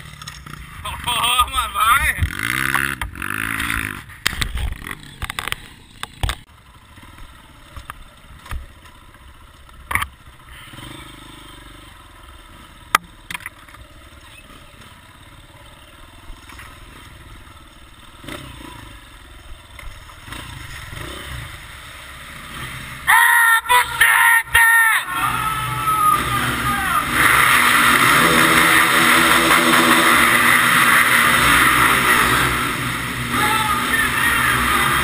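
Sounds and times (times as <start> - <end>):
engine running: 24.6 - 35.0.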